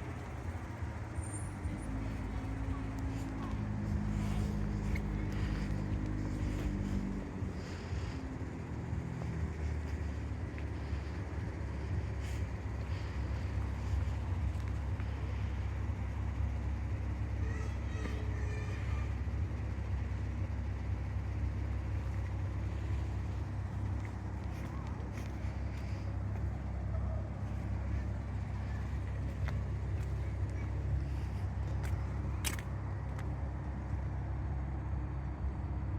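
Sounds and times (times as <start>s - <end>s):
low vehicle rumble: 0.0s - 35.9s.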